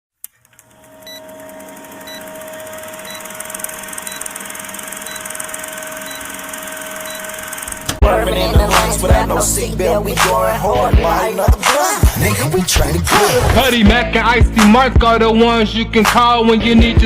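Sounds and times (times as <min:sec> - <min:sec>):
short high beeps: 0:01.0 - 0:01.3, 0:02.0 - 0:02.3, 0:02.9 - 0:07.5.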